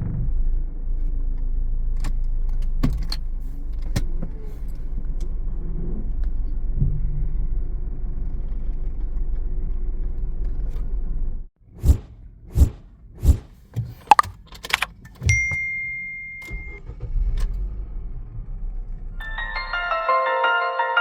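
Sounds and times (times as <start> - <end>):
sharp clicks: 14.0 - 15.0
high beep: 15.3 - 16.8.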